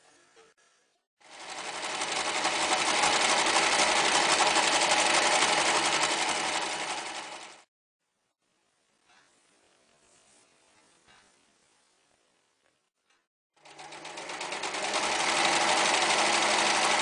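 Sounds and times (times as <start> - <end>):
sewing machine rattling: 1.2 - 7.7, 13.6 - 17.0.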